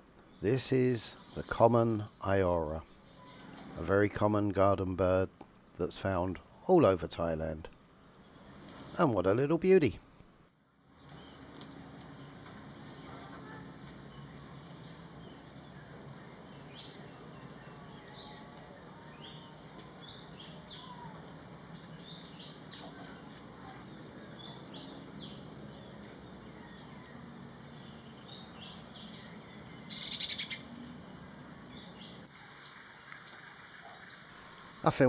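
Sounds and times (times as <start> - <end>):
bird chirping: 14.0 - 31.1.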